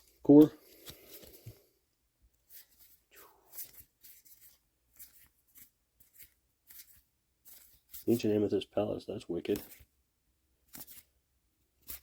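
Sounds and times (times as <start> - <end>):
trading cards swishing: 2.4 - 8.4, 9.5 - 9.9, 10.6 - 11.2, 11.8 - 12.0.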